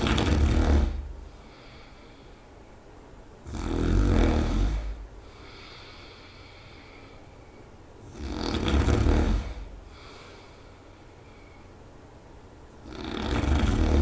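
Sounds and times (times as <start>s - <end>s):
person snoring: 0.0s - 2.1s, 3.4s - 6.9s, 8.0s - 10.6s, 12.8s - 14.0s
quiet breathing: 0.0s - 14.0s.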